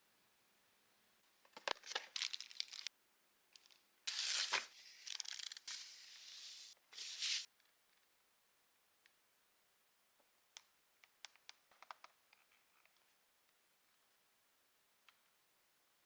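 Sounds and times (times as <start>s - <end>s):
packaging being torn and crinkled: 1.7s - 2.9s, 4.1s - 6.0s.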